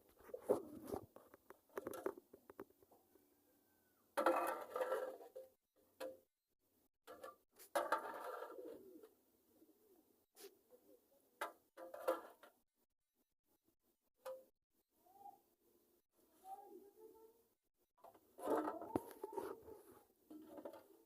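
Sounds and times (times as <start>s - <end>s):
pigeons cooing: 8.1s - 10.2s.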